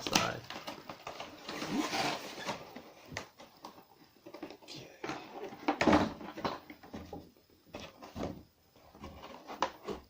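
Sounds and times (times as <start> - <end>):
cardboard box scraping and rustling: 1.3 - 2.9.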